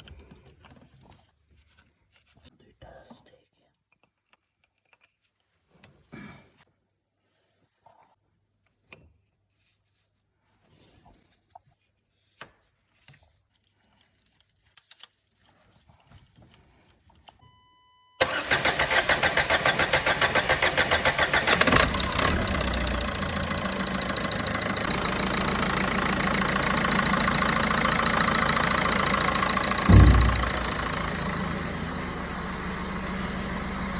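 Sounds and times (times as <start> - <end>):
diesel engine idling: 18.2 - 33.9
starter cranking diesel engine: 18.2 - 33.9
short low thump: 29.8 - 31.6.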